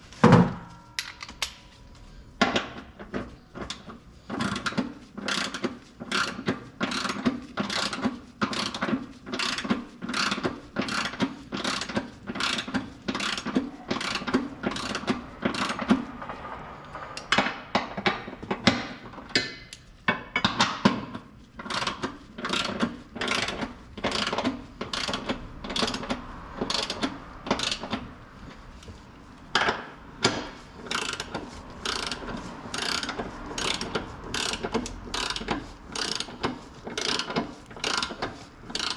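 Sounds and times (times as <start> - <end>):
ratchet wrench clicking: 4.4 - 15.8, 21.6 - 28.0, 30.3 - 38.9.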